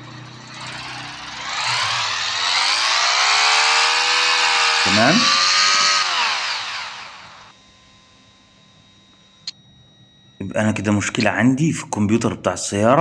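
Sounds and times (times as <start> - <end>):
car engine running: 0.0 - 7.5.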